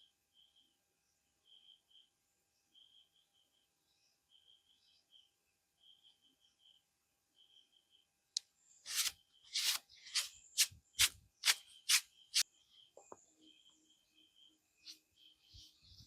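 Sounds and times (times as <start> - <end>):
brisk rubbing strokes: 8.8 - 12.4.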